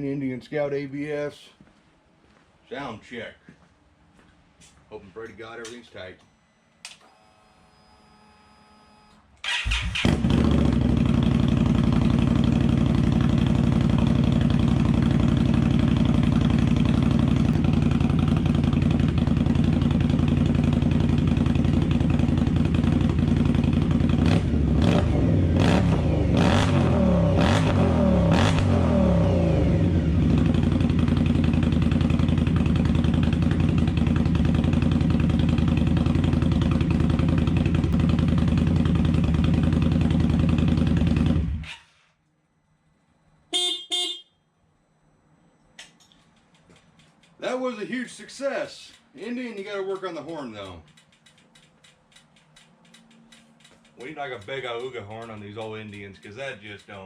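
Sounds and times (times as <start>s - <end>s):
motorcycle engine idling and revving: 9.5s - 41.9s, 48.8s - 57.0s.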